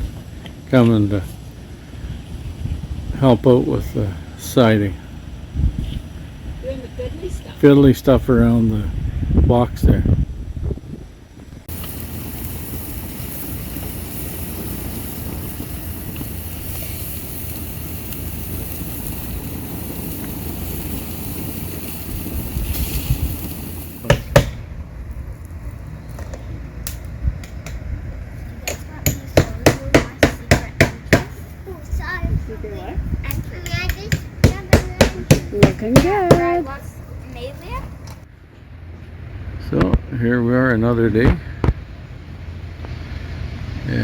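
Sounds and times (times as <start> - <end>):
steady rushing noise: 0.0 - 44.0
hammer striking nails: 24.0 - 24.6, 28.7 - 31.4, 34.0 - 36.5.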